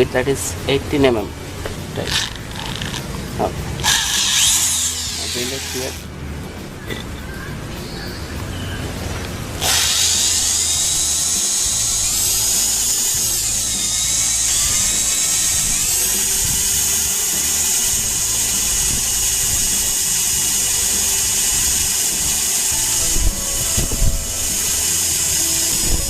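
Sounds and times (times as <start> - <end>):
electric drill whine: 2.1 - 3.0, 3.8 - 6.0, 9.6 - 26.0.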